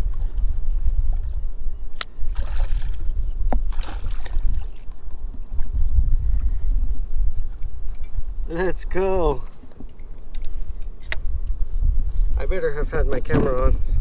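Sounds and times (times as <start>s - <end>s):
wind rumbling on microphone: 0.0s - 14.0s
water splashing: 2.3s - 5.1s.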